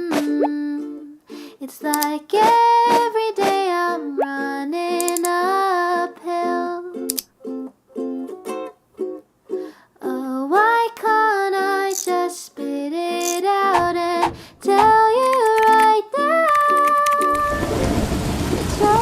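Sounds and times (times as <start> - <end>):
wordless female vocal: 0.0 - 6.9, 10.0 - 17.9, 18.8 - 19.0
plucked ukulele chords: 1.8 - 10.8, 13.4 - 17.8.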